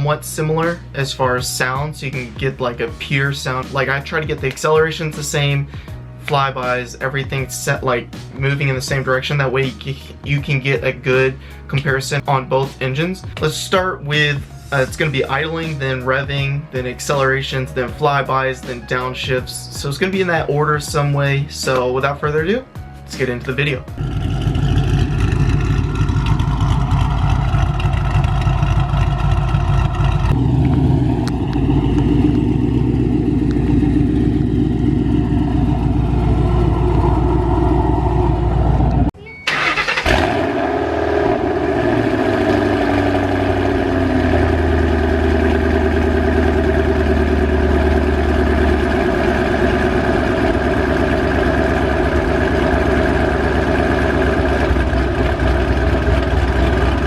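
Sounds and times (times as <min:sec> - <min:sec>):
car engine starting: 0:23.9 - 0:57.0
car engine idling: 0:24.0 - 0:57.0.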